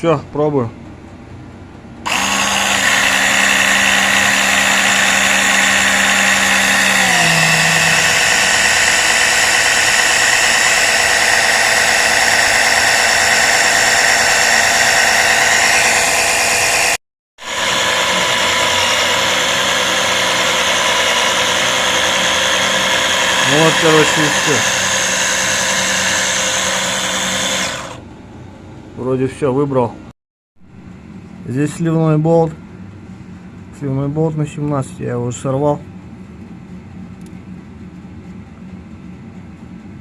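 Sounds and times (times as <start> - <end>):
oil pump motor running: 2.1 - 28.1.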